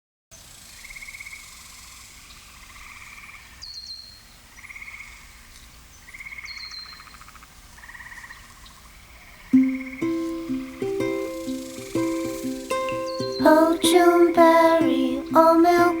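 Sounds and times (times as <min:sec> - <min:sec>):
frogs trilling: 0:09.2 - 0:16.0.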